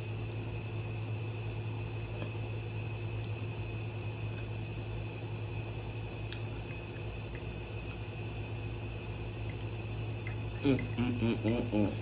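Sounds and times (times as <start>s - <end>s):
steady low hum: 0.0s - 12.0s
quiet chewing: 6.2s - 12.0s.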